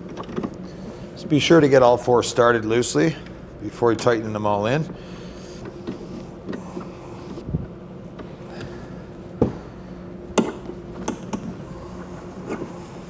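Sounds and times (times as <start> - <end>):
steady low hum: 0.0 - 13.0
tool clicks and knocks: 10.3 - 11.6.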